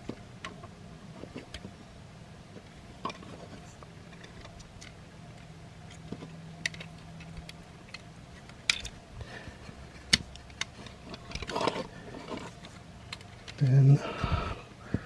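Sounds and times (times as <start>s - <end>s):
plastic toy parts clicking: 6.6s - 9.0s, 10.0s - 13.6s.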